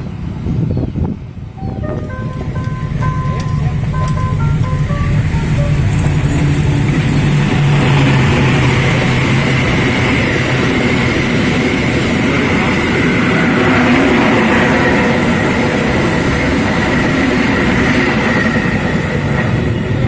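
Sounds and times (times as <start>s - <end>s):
train wheels rushing on rails: 0.0s - 20.0s
thin high tone: 1.6s - 7.0s.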